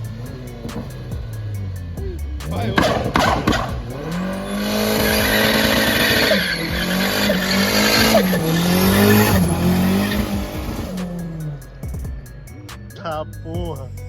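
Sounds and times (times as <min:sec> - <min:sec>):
car engine revving high: 0:00.0 - 0:13.0
tyre squeal: 0:02.0 - 0:11.4.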